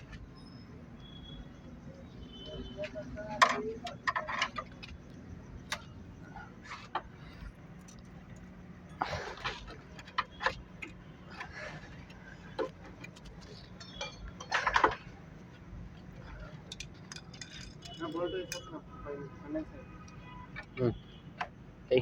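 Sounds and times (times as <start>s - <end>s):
hand tools clinking on metal: 2.8s - 5.0s, 13.0s - 15.1s, 16.2s - 18.8s.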